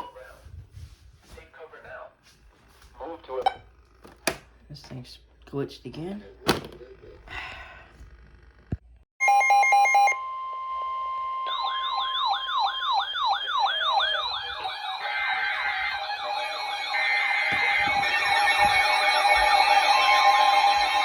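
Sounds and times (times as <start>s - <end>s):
electronic siren sweeping: 9.2s - 21.0s
steady electronic tone: 13.2s - 21.0s.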